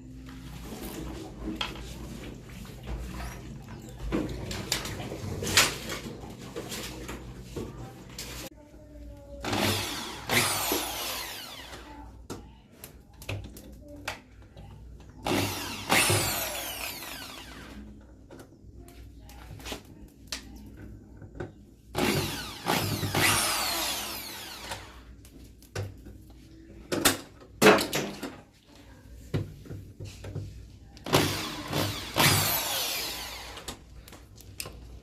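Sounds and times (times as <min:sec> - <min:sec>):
power drill whining: 0:09.4 - 0:11.9, 0:15.2 - 0:17.8, 0:22.0 - 0:25.0, 0:31.1 - 0:33.8.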